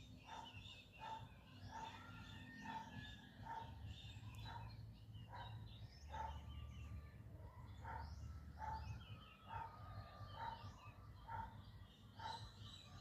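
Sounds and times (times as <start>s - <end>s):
small birds chirping: 0.0s - 13.0s
dog barking: 0.2s - 6.6s, 7.6s - 12.6s.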